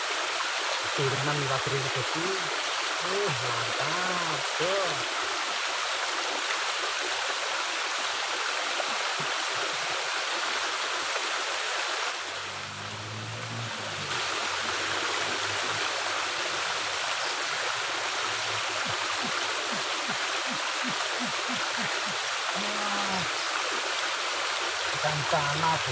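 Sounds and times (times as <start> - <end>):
water rushing through culvert: 0.0 - 25.9
low hum: 12.3 - 20.2.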